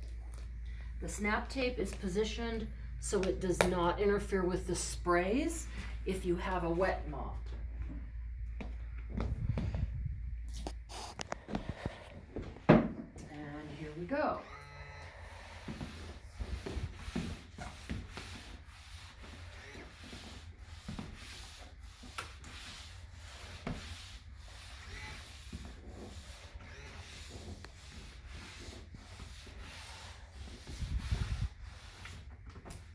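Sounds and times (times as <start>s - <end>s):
low rumble: 4.0s - 10.6s
mop pad rubbing across floor: 15.3s - 32.9s.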